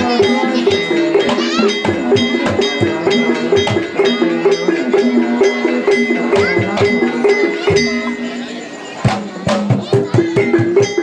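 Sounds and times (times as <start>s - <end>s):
gamelan music: 0.0s - 11.0s.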